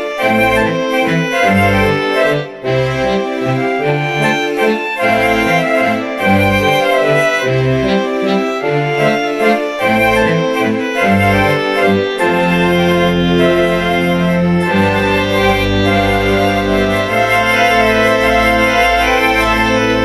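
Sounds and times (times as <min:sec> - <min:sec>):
orchestral held chords: 0:00.0 - 0:20.0.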